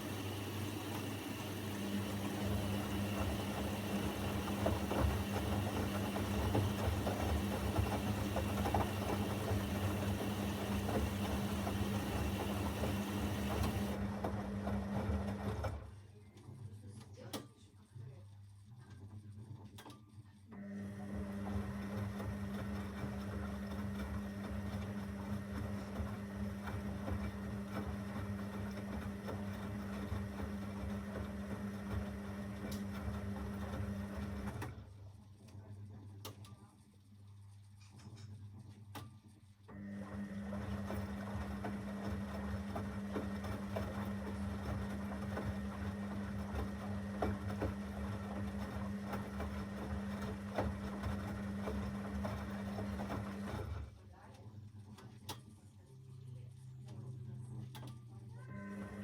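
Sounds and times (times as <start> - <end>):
steady motor hum: 0.0 - 14.0
washing machine drum tumbling: 0.0 - 14.0.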